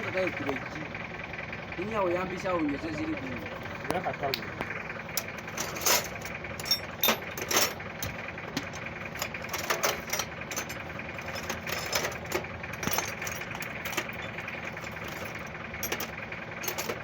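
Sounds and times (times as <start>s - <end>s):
engine running steadily: 0.0s - 17.0s
sharp metallic clicks and knocks: 3.8s - 17.0s.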